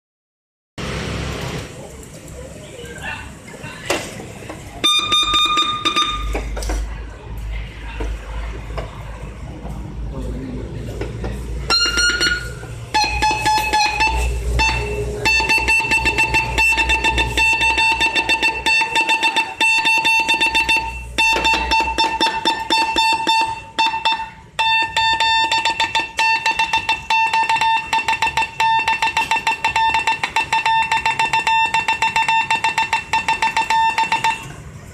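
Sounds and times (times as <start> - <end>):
morse code beeps: 4.8 - 6.5, 11.7 - 34.6.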